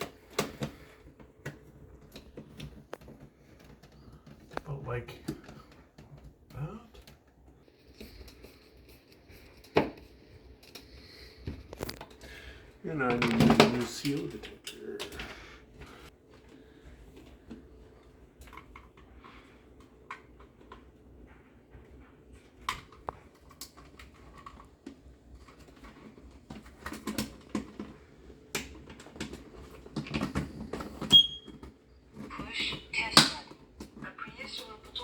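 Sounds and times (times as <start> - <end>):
clicks and handling noises: 0.0 - 12.4, 13.0 - 35.0.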